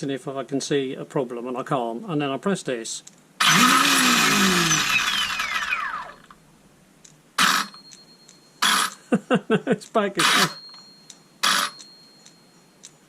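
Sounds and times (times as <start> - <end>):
chainsaw motor whirring: 3.4 - 6.4, 7.4 - 7.8, 8.6 - 9.0, 10.2 - 10.6, 11.4 - 11.8.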